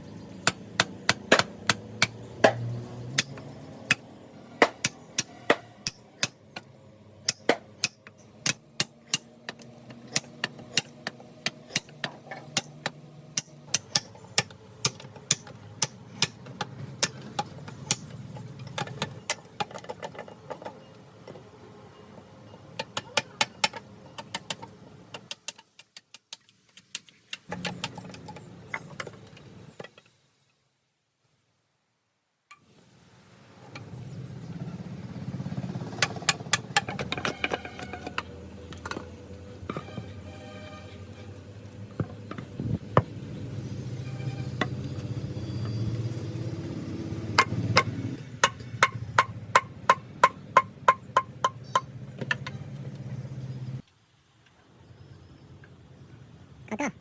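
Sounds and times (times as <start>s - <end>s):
hand tool striking wood: 0.4s - 20.2s, 47.4s - 52.5s.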